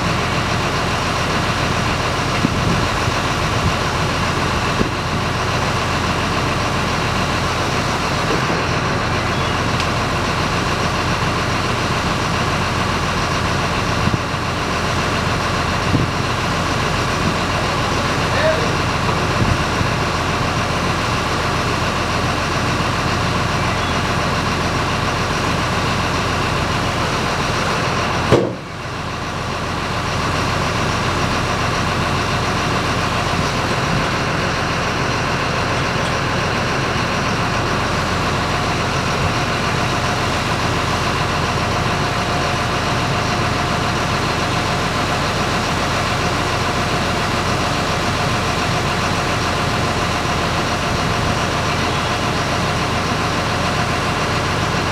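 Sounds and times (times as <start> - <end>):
engine running steadily: 0.0 - 54.9
sharp knock: 28.3 - 28.6.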